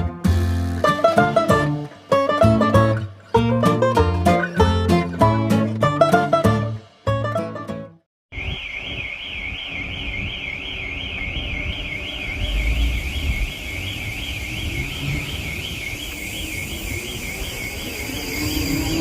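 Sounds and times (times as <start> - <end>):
warbling electronic alarm: 8.3 - 19.0.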